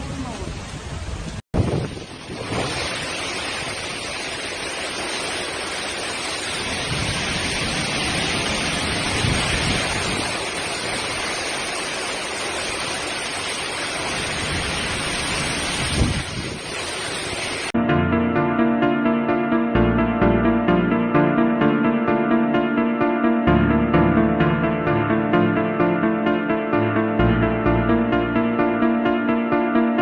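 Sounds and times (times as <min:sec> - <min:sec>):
wind rushing: 0:00.0 - 0:05.3, 0:06.3 - 0:11.8, 0:12.6 - 0:18.9
heavy rain: 0:00.0 - 0:17.8.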